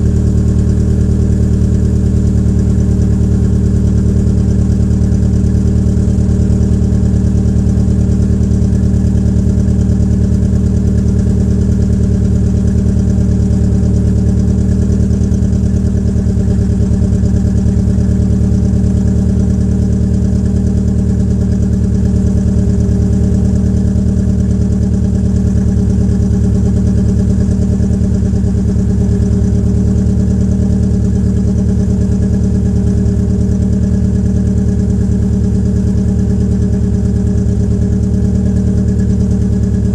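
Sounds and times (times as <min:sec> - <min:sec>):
car engine idling rough: 0:00.0 - 0:39.9.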